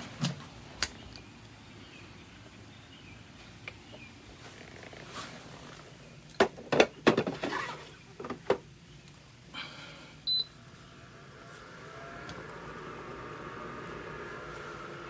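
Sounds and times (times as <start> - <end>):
dehumidifier fan humming: 0.0 - 15.0.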